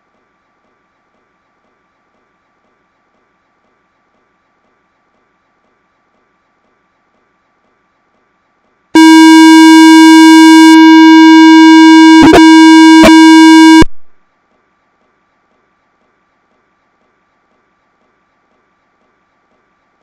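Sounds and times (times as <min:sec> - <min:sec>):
loud buzzy electronic beep: 0:09.0 - 0:14.0.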